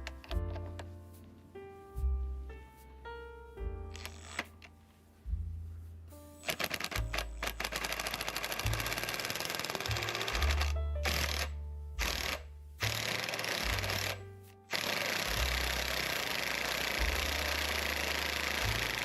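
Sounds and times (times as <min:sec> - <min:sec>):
low rumble: 0:05.1 - 0:06.3.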